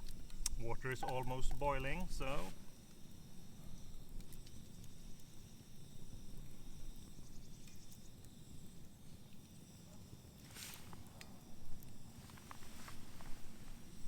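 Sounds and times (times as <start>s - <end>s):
campfire crackling and popping: 0.0s - 14.0s
faint high hiss: 0.6s - 2.8s.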